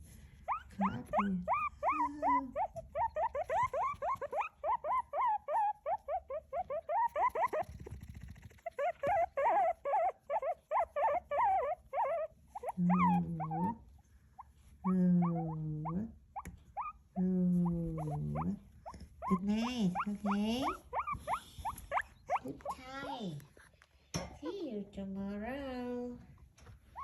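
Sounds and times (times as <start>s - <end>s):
small pet squealing: 0.5s - 13.8s, 14.8s - 17.0s, 18.0s - 23.2s.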